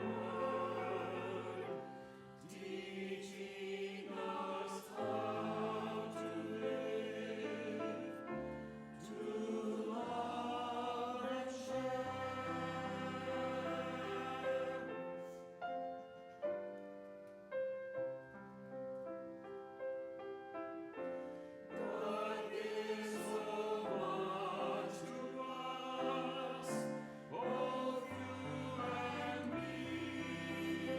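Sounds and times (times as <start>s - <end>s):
group singing a hymn: 0.0s - 15.4s, 21.8s - 30.9s.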